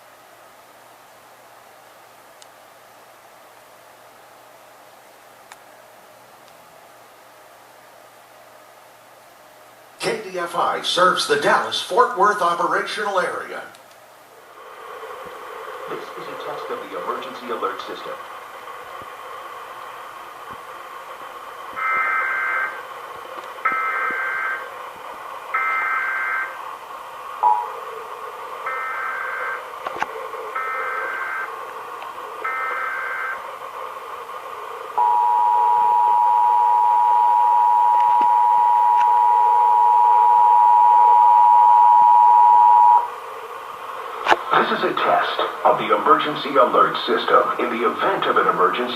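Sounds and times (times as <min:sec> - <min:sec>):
background hiss: 0:00.0 - 0:48.9
loud steady attention tone: 0:14.4 - 0:47.0
digital data bursts: 0:30.5 - 0:31.5.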